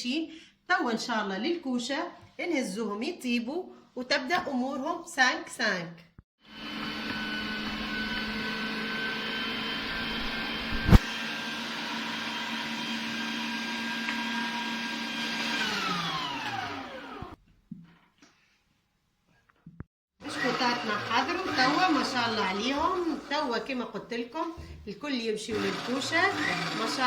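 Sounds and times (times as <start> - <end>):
electric motor humming: 6.5 - 11.0, 25.6 - 27.0.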